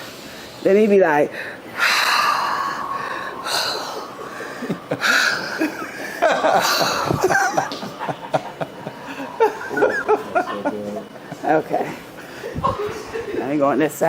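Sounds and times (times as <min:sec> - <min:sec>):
woman breathing heavily: 0:01.3 - 0:13.5
people laughing: 0:03.4 - 0:13.6.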